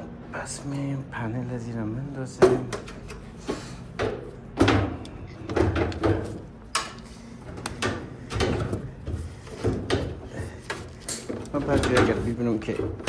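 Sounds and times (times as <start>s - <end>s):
sheet metal knocks and clunks: 4.0s - 6.5s, 7.7s - 10.3s.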